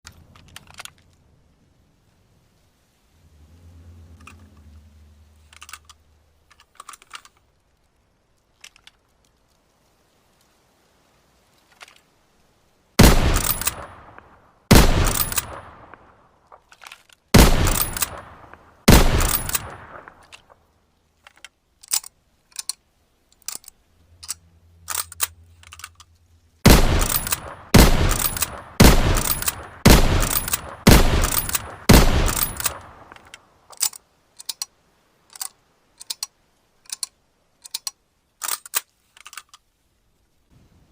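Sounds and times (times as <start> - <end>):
low hum: 2.9 - 6.4
rifle shots echoing: 13.0 - 16.2, 17.3 - 20.2, 26.6 - 33.2
rifle lever clicks: 23.4 - 26.1, 27.0 - 34.7, 35.3 - 39.6.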